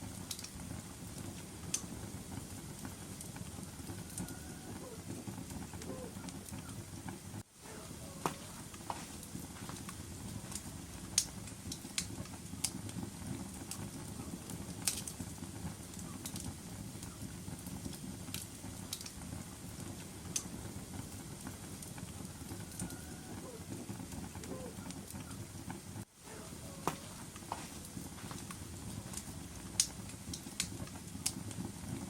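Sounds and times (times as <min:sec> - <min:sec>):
fire crackling and popping: 0:00.0 - 0:32.0
low roar of flames: 0:00.0 - 0:32.0.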